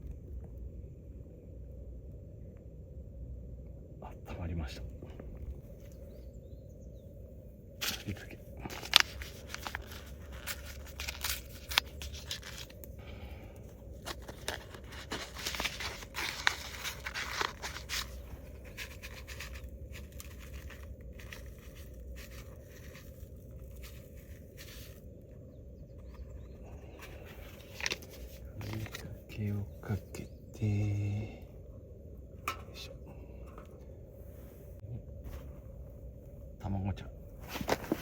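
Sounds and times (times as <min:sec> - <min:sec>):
handling camp cooking gear: 0:07.7 - 0:30.6, 0:32.3 - 0:36.4, 0:37.3 - 0:38.0.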